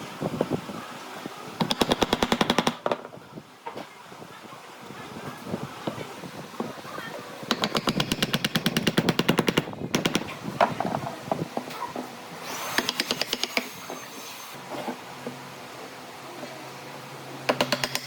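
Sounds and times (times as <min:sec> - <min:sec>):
tool rapid clicks: 0:12.7 - 0:13.6.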